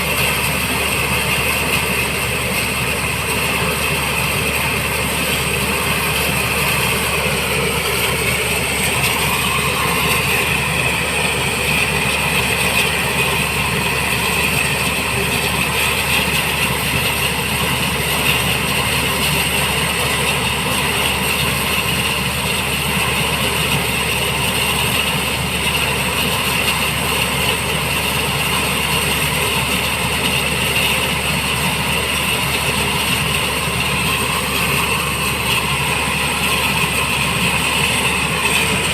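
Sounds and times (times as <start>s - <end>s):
high whine: 0.0s - 24.2s, 27.6s - 38.9s
helicopter engine running: 0.0s - 38.9s.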